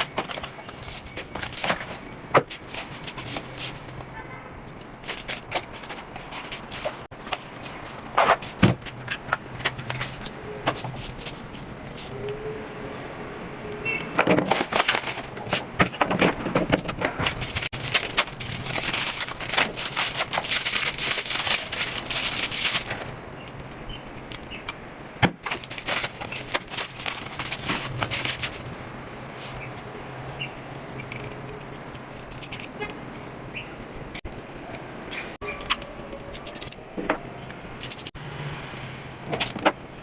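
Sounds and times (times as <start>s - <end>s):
packaging rustling and crinkling: 0.0s - 4.0s, 5.0s - 12.2s, 14.2s - 23.2s, 25.4s - 28.8s.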